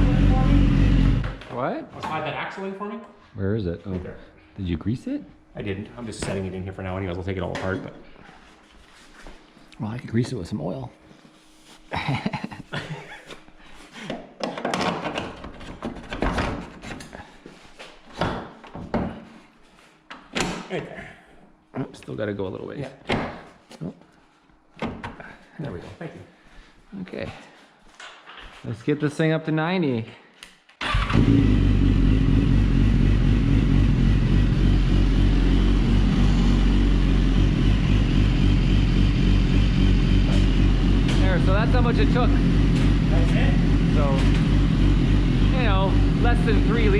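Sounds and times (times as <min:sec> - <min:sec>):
motorcycle engine running: 0:00.0 - 0:01.4, 0:31.1 - 0:46.9.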